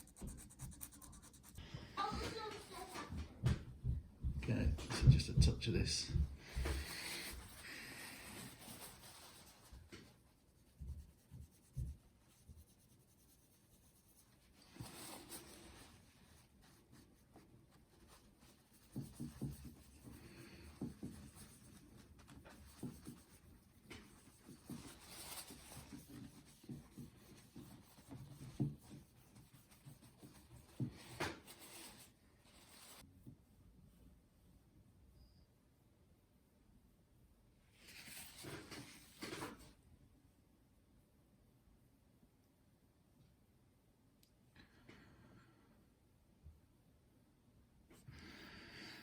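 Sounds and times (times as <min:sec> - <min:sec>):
faint scratching and rubbing: 0:00.0 - 0:03.1, 0:05.6 - 0:33.1, 0:37.7 - 0:39.8.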